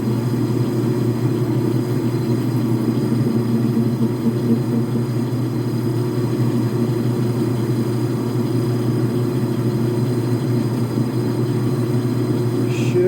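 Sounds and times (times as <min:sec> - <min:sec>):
metal lathe humming: 0:00.0 - 0:13.0.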